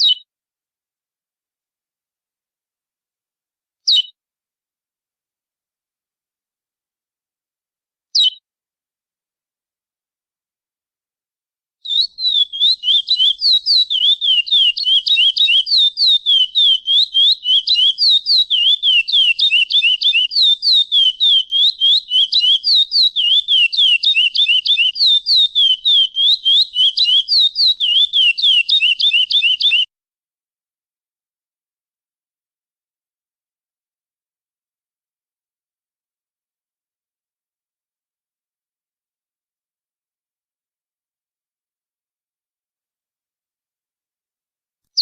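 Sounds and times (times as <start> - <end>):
finch singing whistled notes: 11.8 - 29.9.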